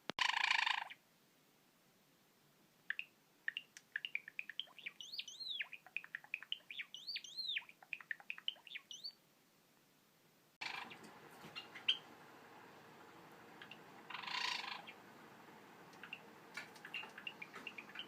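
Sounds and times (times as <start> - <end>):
sparrow singing: 2.9 - 9.2, 10.6 - 12.1, 13.6 - 15.0, 16.0 - 18.0.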